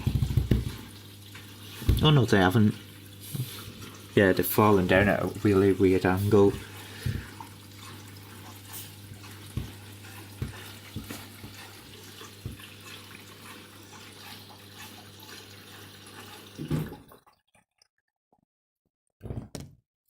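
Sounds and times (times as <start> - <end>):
washing machine low hum: 0.0 - 17.2
water hissing into drum: 0.0 - 17.2.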